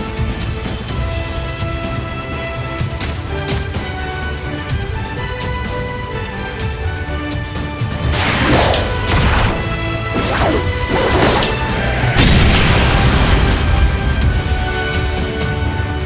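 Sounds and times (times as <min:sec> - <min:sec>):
background music: 0:00.0 - 0:16.0
heavy hits with whooshes: 0:08.1 - 0:14.8.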